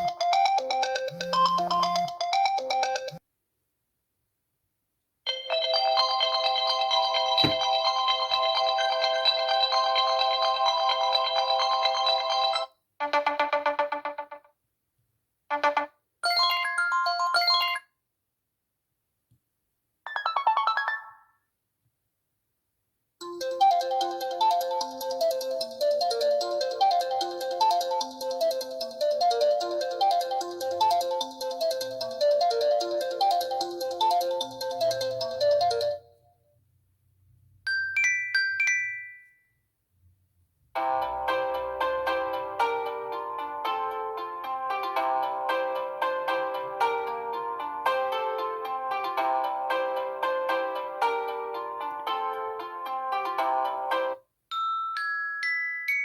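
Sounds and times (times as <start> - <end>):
electronic ringtone melodies: 0.0 - 3.2, 15.5 - 17.8, 20.1 - 21.3, 23.2 - 36.0, 37.7 - 39.4.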